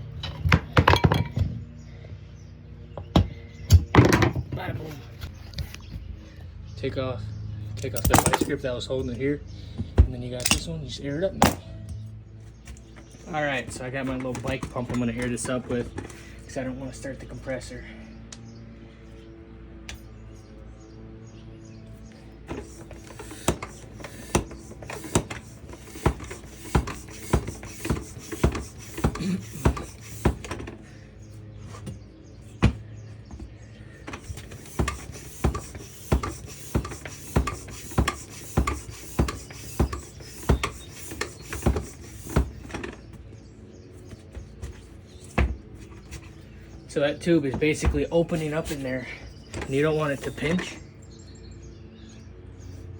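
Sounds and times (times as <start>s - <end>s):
hand bicycle pump strokes: 22.5s - 30.8s, 34.0s - 43.1s, 47.5s - 50.7s.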